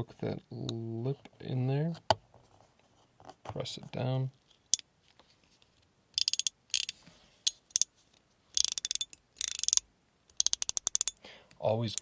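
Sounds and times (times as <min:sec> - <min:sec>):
metal fidget slider clicking: 0:06.2 - 0:07.9, 0:08.6 - 0:11.2.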